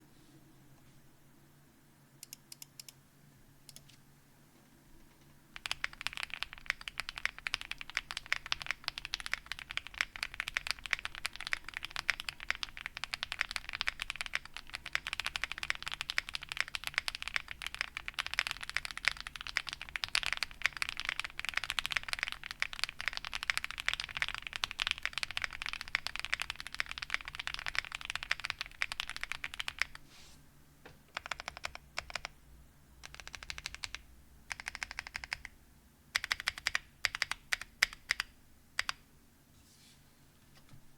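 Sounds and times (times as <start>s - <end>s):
mechanical keyboard typing: 5.6s - 30.0s, 31.1s - 32.4s, 33.0s - 39.0s.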